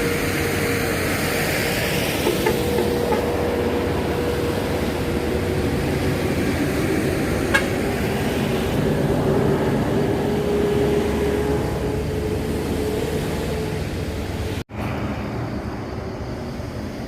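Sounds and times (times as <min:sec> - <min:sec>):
vehicle engine and road noise: 0:00.0 - 0:17.0.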